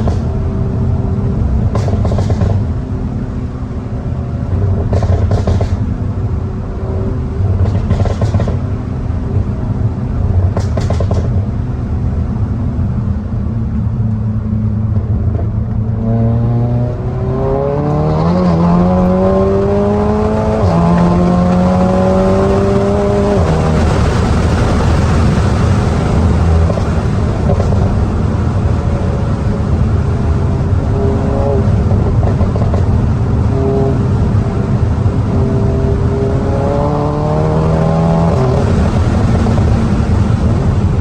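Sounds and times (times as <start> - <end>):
car engine and exhaust accelerating: 0.0 - 41.0.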